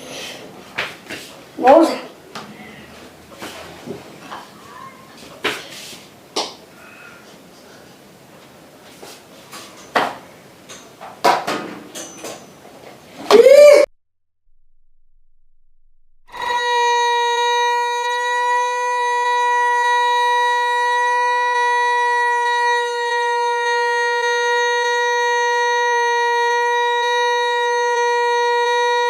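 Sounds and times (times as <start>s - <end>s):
steady pitched tone: 13.4s - 18.9s.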